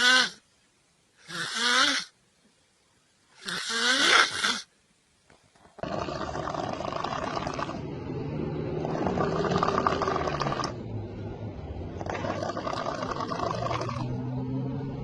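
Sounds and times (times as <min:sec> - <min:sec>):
person snoring: 0:05.8 - 0:10.8, 0:12.0 - 0:14.2.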